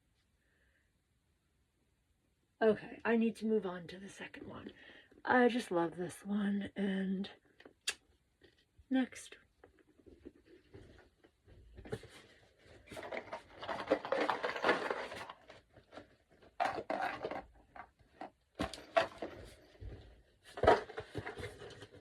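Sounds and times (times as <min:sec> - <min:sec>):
packaging rustling: 0:10.0 - 0:22.0.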